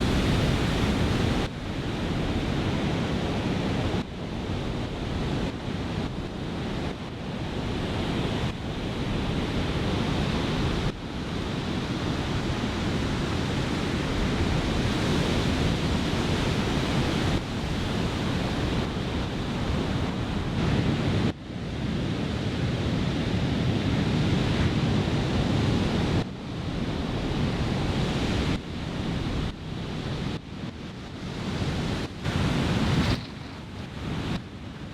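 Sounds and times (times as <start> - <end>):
wind buffeting microphone: 25.7 - 34.9
surf breaking: 32.1 - 34.5.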